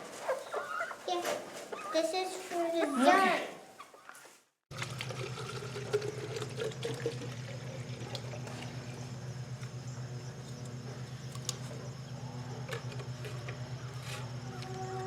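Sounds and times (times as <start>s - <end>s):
water pouring: 4.7s - 8.8s
low hum: 4.8s - 15.0s.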